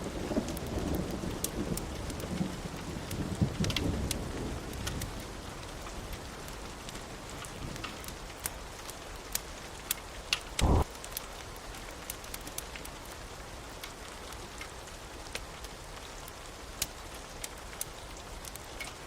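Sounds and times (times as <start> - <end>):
sharp ticks of raindrops: 0.0 - 19.0
steady rain: 0.0 - 19.0
low thunder rumble: 10.6 - 10.9.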